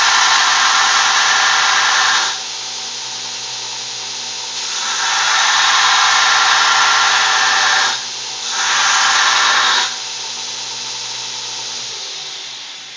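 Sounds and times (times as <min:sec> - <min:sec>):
loud grinding rasp: 0:00.0 - 0:02.5, 0:04.6 - 0:10.1
grinder motor humming: 0:00.0 - 0:12.9.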